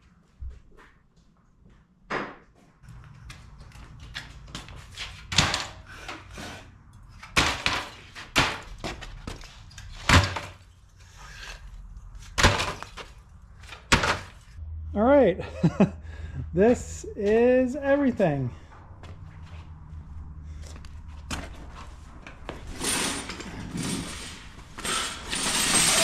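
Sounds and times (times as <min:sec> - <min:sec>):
metal coils thunking onto pile: 0:22.6 - 0:26.0.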